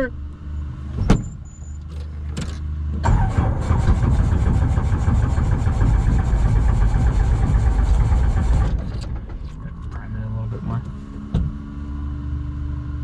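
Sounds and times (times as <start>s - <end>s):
engine starter cranking: 1.4s - 9.9s.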